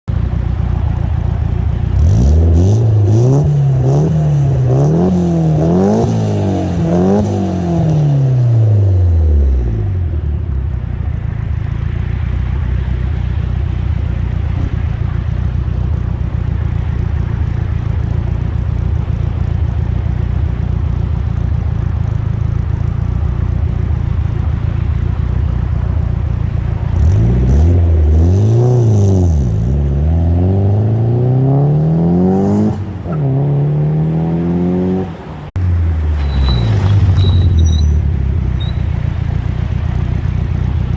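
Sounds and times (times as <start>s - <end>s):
turbocharged car engine revving: 0.6s - 10.0s, 25.7s - 40.9s.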